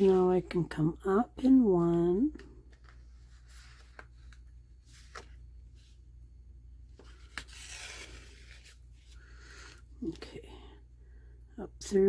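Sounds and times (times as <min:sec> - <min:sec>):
string rubbing through paper: 0:07.2 - 0:09.1.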